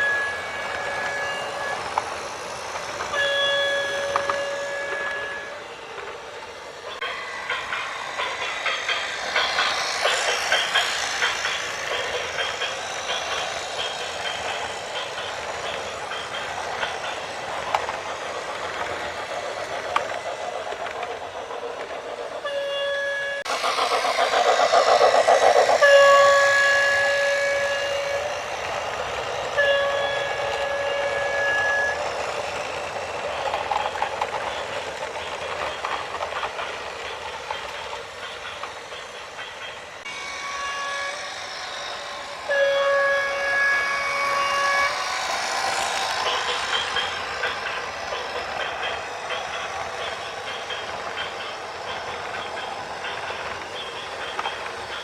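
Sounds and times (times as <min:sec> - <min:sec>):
train rumbling and clattering past: 0:00.0 - 0:55.0
multi-note train horn: 0:03.1 - 0:05.5, 0:22.4 - 0:23.4, 0:25.8 - 0:28.2, 0:29.6 - 0:32.0, 0:40.1 - 0:41.3, 0:42.5 - 0:45.0.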